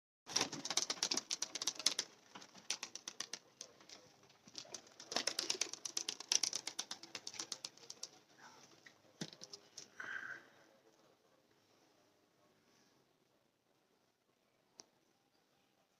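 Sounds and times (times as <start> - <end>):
pigeons clicking and tapping: 0.3 - 8.2.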